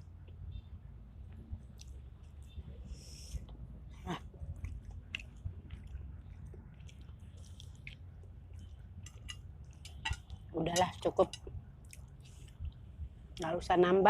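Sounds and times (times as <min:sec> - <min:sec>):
person chewing food: 0:01.3 - 0:02.6, 0:04.2 - 0:12.9.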